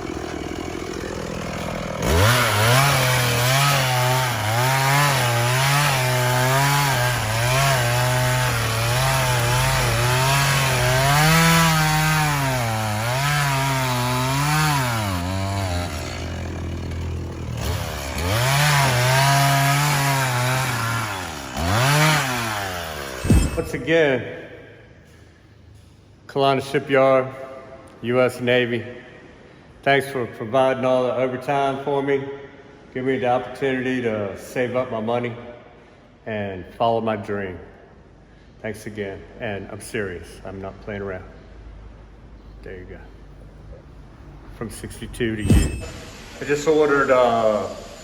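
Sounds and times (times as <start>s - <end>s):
chainsaw cutting wood: 0.0s - 24.0s, 45.2s - 48.0s.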